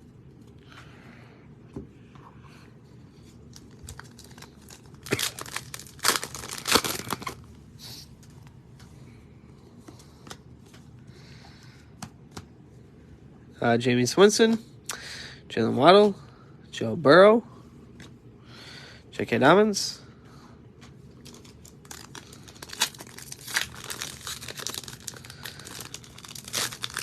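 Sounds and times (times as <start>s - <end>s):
wrapper tearing and crinkling: 3.5s - 7.4s, 21.2s - 27.0s.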